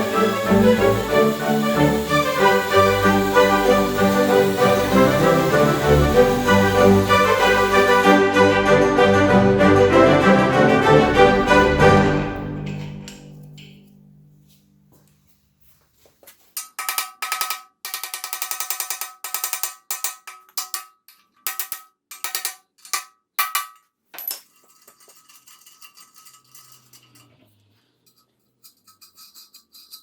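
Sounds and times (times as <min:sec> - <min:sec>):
rapid metallic clicking: 0:00.0 - 0:08.1.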